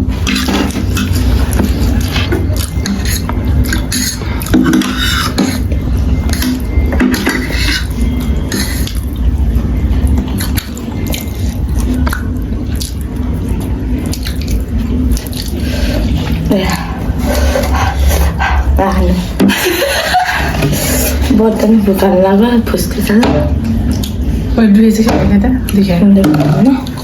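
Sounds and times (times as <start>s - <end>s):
utensils clinking against bowl: 0.0s - 9.3s, 25.0s - 27.0s
low steady hum: 0.0s - 27.0s.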